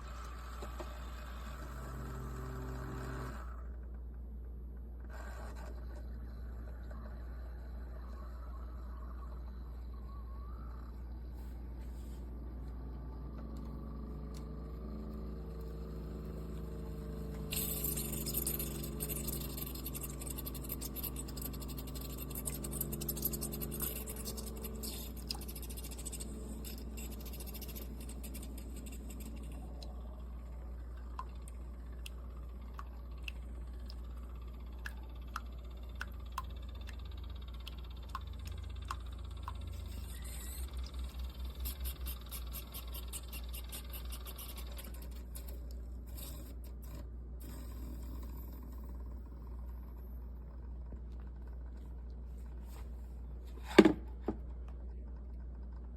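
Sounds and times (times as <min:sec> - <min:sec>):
coffee maker pump hum: 0:00.0 - 0:55.9
hissing and sputtering: 0:13.9 - 0:36.8, 0:37.4 - 0:49.6
faint ticks: 0:30.8 - 0:46.3.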